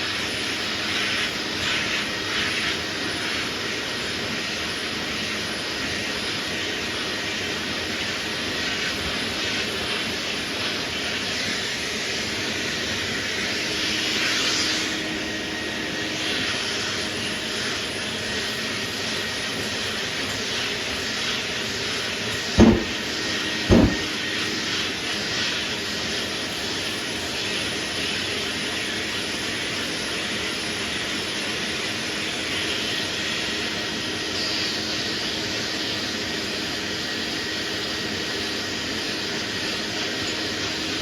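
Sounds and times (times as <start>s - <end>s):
sharp thump: 22.6s - 23.0s, 23.7s - 24.1s.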